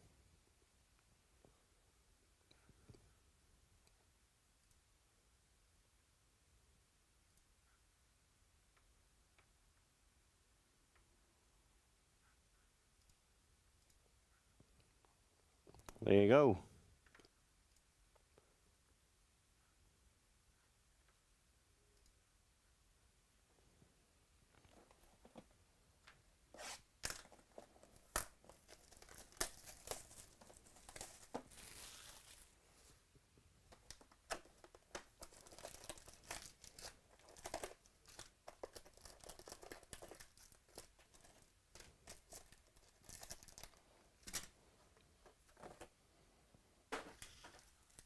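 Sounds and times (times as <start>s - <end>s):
wrapper tearing and crinkling: 27.9s - 32.5s, 35.2s - 41.4s, 42.0s - 44.5s.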